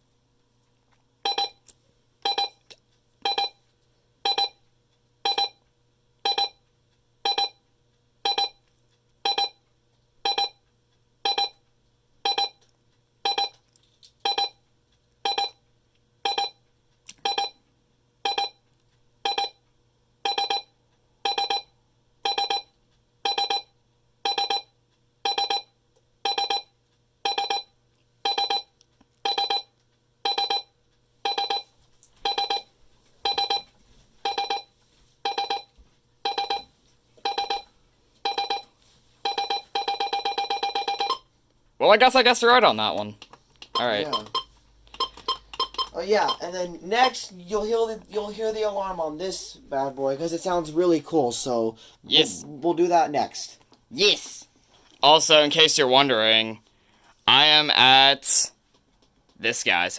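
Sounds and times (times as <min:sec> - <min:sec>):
alert radio alarm beeps: 0:01.2 - 0:01.6, 0:02.2 - 0:02.6, 0:03.2 - 0:03.6, 0:04.2 - 0:04.6, 0:05.3 - 0:05.6, 0:06.2 - 0:06.6, 0:07.2 - 0:07.6, 0:08.3 - 0:08.6, 0:09.2 - 0:09.6, 0:10.2 - 0:10.6, 0:11.2 - 0:11.6, 0:12.2 - 0:12.6, 0:13.2 - 0:13.6, 0:14.2 - 0:14.6, 0:15.2 - 0:15.6, 0:16.2 - 0:16.6, 0:17.2 - 0:17.6, 0:18.2 - 0:18.6, 0:19.2 - 0:19.6, 0:20.3 - 0:20.7, 0:21.3 - 0:22.7, 0:23.3 - 0:23.7, 0:24.3 - 0:26.7, 0:27.3 - 0:29.7, 0:30.3 - 0:30.7, 0:31.3 - 0:32.6, 0:33.3 - 0:33.6, 0:34.3 - 0:34.7, 0:35.3 - 0:35.7, 0:36.3 - 0:36.7, 0:37.3 - 0:37.7, 0:38.3 - 0:38.7, 0:39.3 - 0:41.2, 0:43.8 - 0:46.5.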